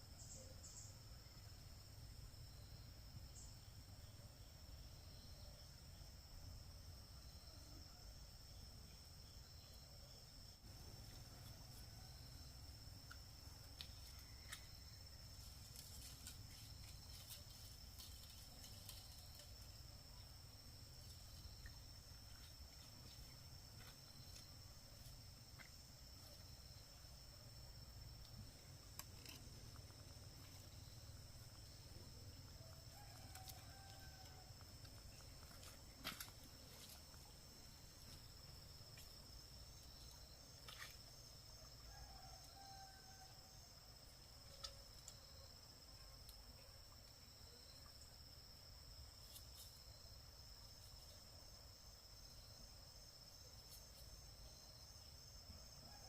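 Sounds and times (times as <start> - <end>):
insect drone: 0.0 - 56.0.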